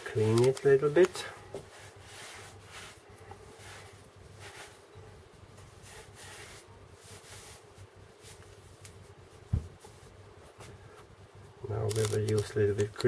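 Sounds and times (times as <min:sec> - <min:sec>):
soft rubbing strokes: 0:00.0 - 0:10.9
low thump: 0:09.5 - 0:09.8.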